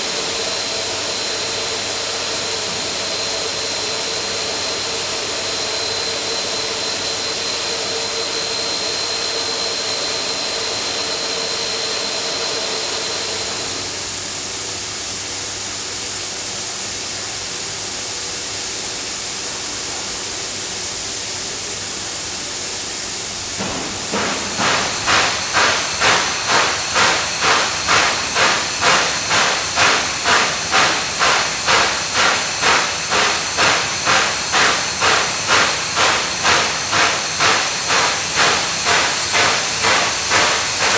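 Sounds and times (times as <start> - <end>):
steam locomotive loud hiss: 0.0 - 40.9
rhythmic pulsing hiss: 18.5 - 40.9.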